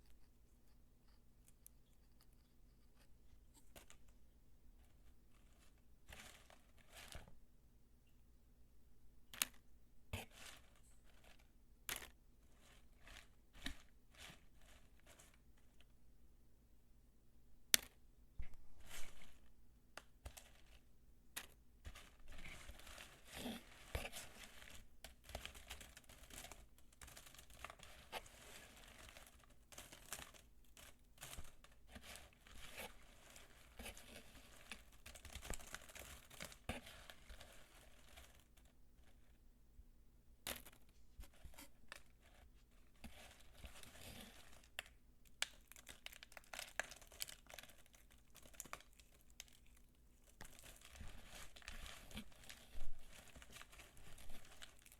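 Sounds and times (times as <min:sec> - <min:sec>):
soap peelings crumbled by hand: 0:41.7 - 0:54.9.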